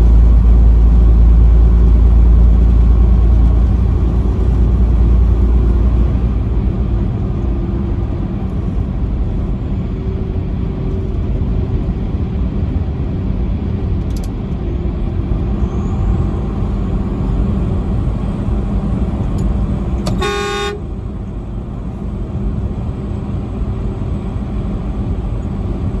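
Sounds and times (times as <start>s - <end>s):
highway road noise rumble: 0.0s - 26.0s
truck horn blast: 20.0s - 21.0s.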